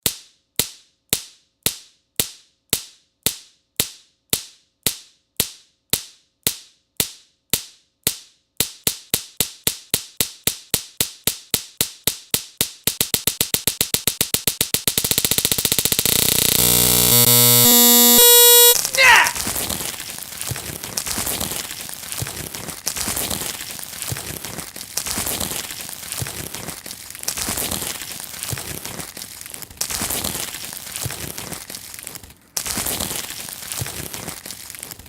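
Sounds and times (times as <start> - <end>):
repeated sharp snap: 0.0 - 16.5
buzzing tone: 15.1 - 18.8.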